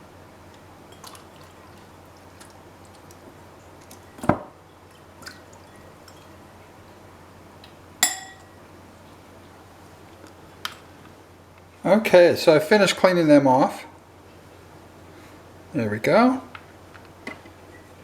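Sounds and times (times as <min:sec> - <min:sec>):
kitchenware knocks and clinks: 0:08.0 - 0:08.6.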